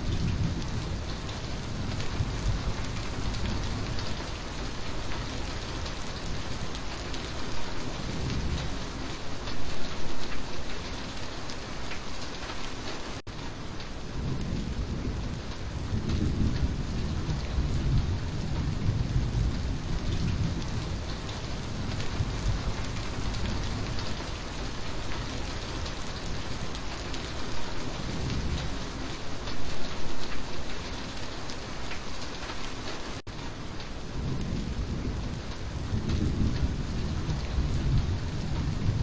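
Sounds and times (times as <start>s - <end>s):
low thunder rumble: 0.0s - 6.8s, 7.4s - 9.2s, 14.1s - 26.8s, 27.4s - 29.2s, 34.1s - 39.0s
heavy rain: 0.0s - 39.0s.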